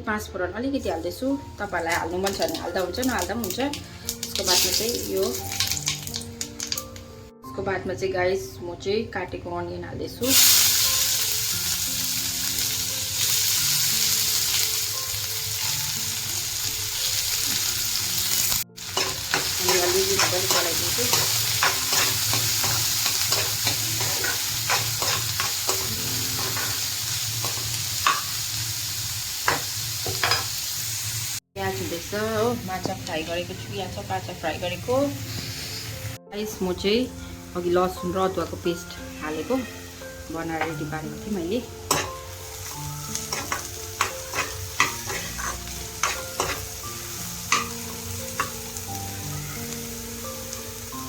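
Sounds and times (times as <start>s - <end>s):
onions sizzling in hot oil: 1.2s - 7.0s, 10.2s - 51.0s
utensil scraping and tapping pan: 43.4s - 46.6s.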